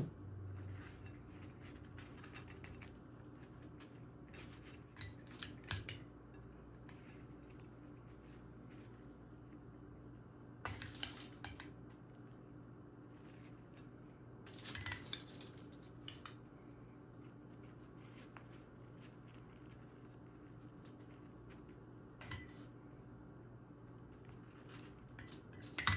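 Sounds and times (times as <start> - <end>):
faint low hum: 0.0 - 25.9
utensils clinking against dishes: 10.7 - 11.8, 14.5 - 16.4, 22.2 - 22.6, 25.2 - 25.9.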